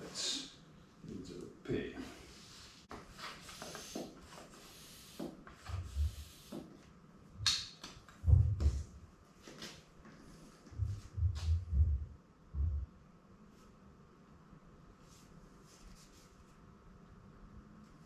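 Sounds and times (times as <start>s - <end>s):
dull thumps: 8.2s - 8.9s.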